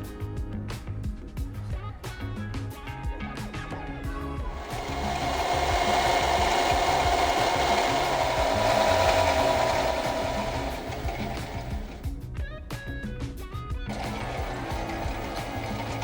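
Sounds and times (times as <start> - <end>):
metal lathe cutting with whine: 4.5 - 12.0.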